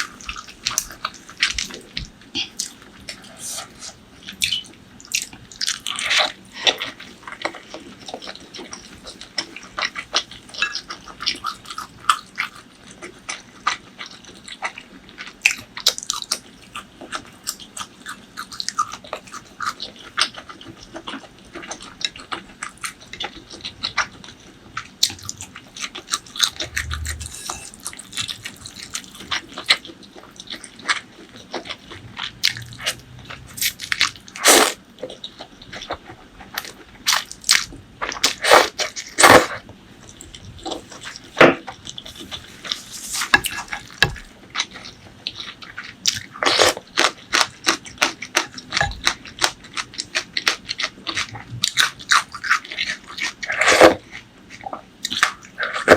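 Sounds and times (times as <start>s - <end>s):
person biting and chewing food: 25.0s - 34.8s, 36.5s - 39.7s, 40.7s - 44.8s.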